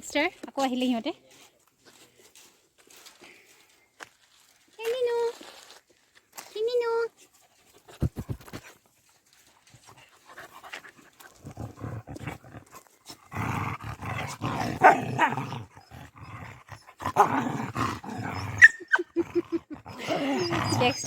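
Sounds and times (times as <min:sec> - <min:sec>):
dogs play-fighting: 0:09.6 - 0:21.0.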